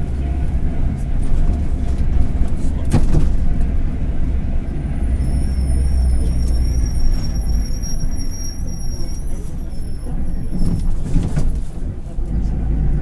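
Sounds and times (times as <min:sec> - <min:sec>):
bus engine droning: 0:00.0 - 0:13.0
thin high squeal: 0:05.1 - 0:10.2.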